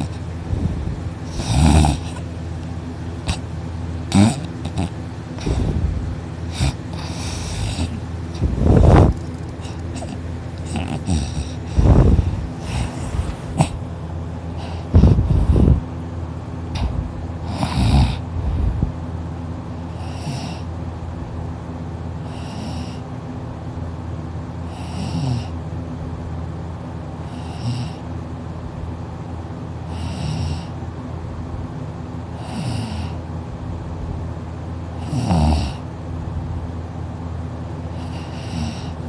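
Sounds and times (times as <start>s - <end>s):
person snoring heavily: 0.0s - 2.4s, 4.1s - 13.9s, 14.5s - 15.8s, 16.8s - 18.9s, 19.9s - 20.7s, 22.2s - 23.0s, 24.6s - 25.6s, 27.2s - 28.0s, 29.9s - 30.8s, 32.4s - 33.3s, 35.0s - 35.9s, 37.9s - 39.0s
steady low hum: 0.0s - 39.0s.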